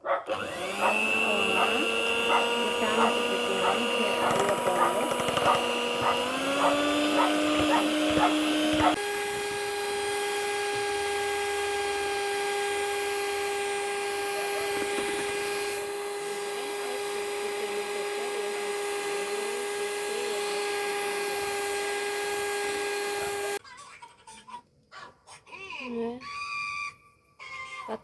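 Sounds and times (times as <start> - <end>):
kitchen mixer motor whining: 0.2 - 23.6.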